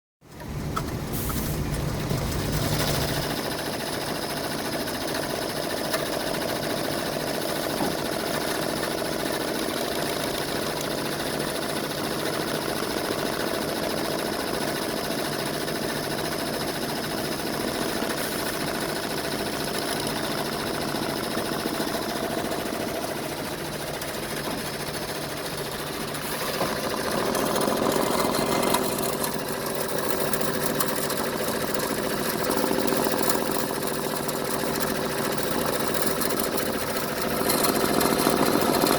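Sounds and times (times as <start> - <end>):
machine grinding over a hum: 1.6 - 3.6, 26.1 - 38.9.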